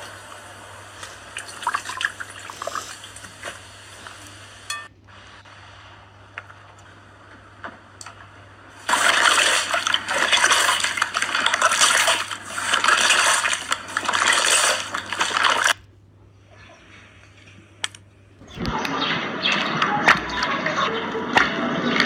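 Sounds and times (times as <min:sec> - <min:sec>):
slime squelching by hand: 0:08.8 - 0:15.9.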